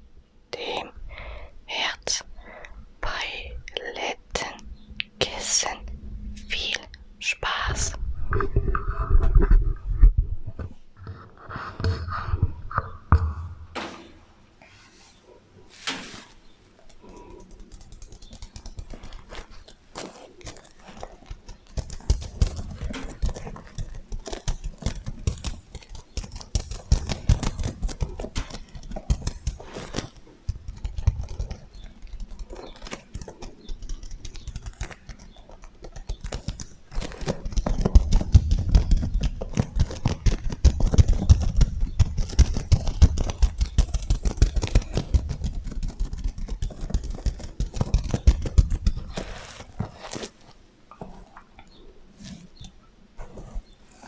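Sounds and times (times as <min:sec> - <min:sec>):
fingers brushing over sequins: 0:14.6 - 0:51.3.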